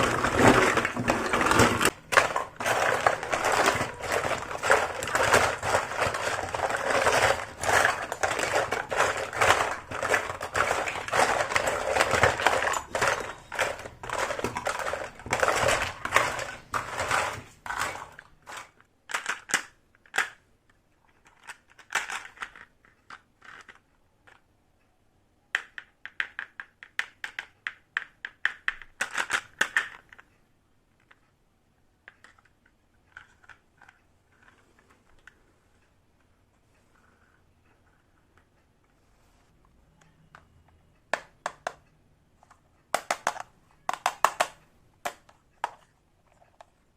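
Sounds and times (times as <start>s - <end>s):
packaging rustling and crinkling: 0.0s - 18.8s
plastic pieces clicking: 0.0s - 24.5s, 25.6s - 30.3s, 42.9s - 46.7s.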